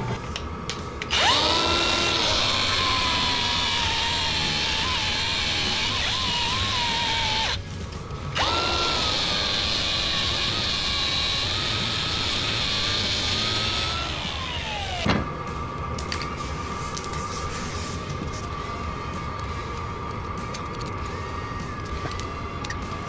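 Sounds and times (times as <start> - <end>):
electric grinder whining: 1.1 - 7.7, 8.3 - 15.1.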